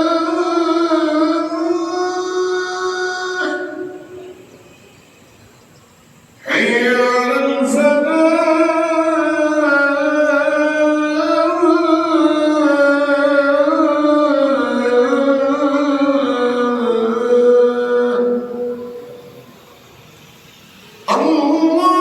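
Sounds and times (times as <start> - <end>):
man chanting call to prayer: 0.0 - 4.4, 6.4 - 19.4, 21.1 - 22.0.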